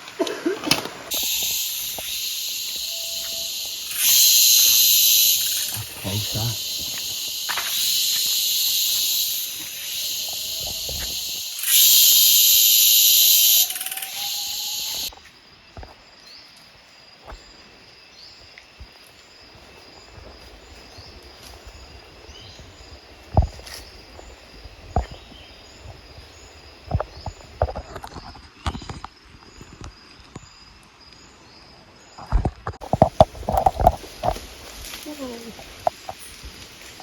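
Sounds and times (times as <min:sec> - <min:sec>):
cicadas buzzing: 0:00.0 - 0:37.0
short rising chirps: 0:01.1 - 0:15.1.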